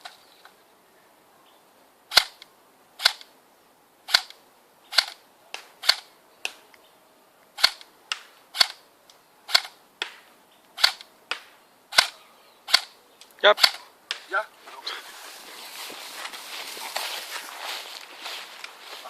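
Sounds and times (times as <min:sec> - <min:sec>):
airsoft gun single shots: 0:13.6 - 0:14.2.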